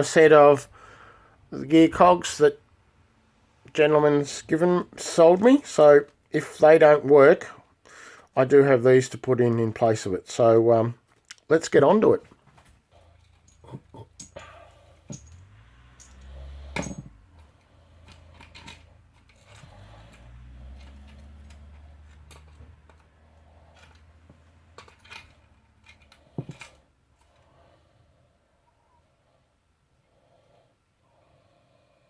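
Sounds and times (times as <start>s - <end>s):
tools clicking and tapping: 13.2s - 26.8s.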